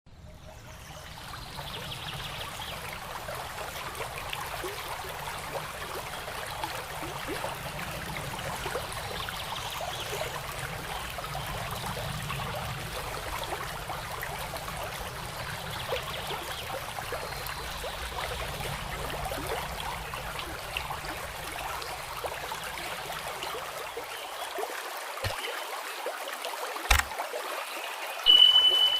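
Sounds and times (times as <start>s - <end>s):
stream of water running: 0.1s - 28.9s
sharp clicks: 26.9s - 27.1s.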